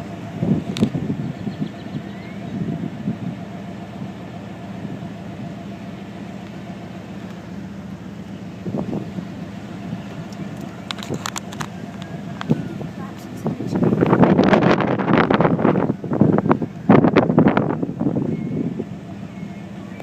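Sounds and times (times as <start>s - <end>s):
wind noise: 0.0s - 3.5s, 8.6s - 9.3s, 10.7s - 19.0s
vehicle engine idling: 0.0s - 20.0s.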